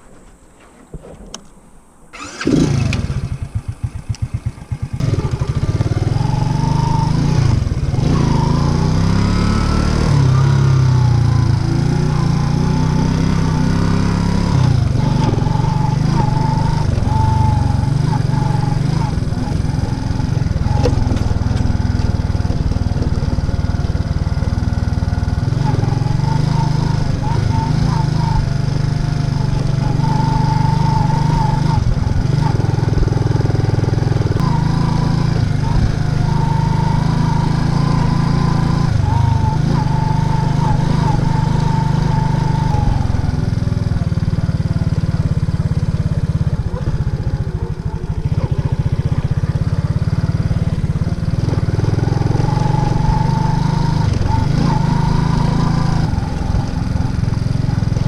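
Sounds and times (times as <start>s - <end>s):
engine whine: 0.0s - 58.0s
moped engine running: 2.1s - 58.0s
wind noise: 13.6s - 44.1s.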